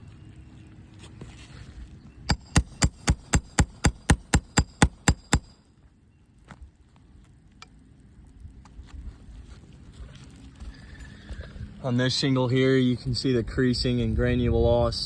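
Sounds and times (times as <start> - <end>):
hammer striking metal nail puller: 2.3 - 5.6.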